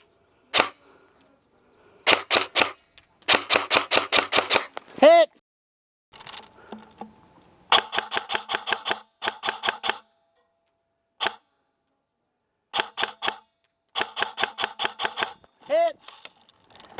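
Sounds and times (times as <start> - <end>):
airsoft gun firing bursts: 2.0 - 4.7, 7.7 - 10.1, 12.7 - 15.4.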